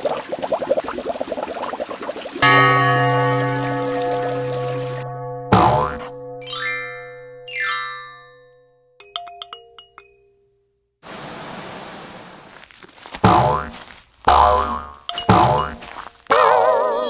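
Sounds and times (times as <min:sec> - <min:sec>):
steady hiss of noise: 0:11.0 - 0:12.6.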